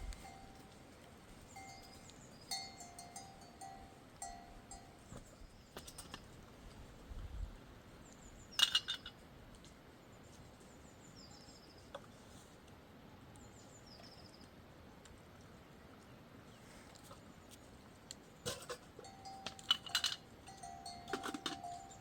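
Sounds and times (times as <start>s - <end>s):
sheep bell clanking: 0.0s - 5.1s, 19.0s - 22.0s.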